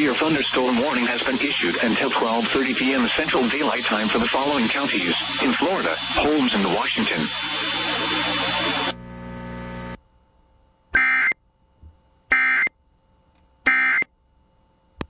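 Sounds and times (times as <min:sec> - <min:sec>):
radio static: 0:00.0 - 0:10.0.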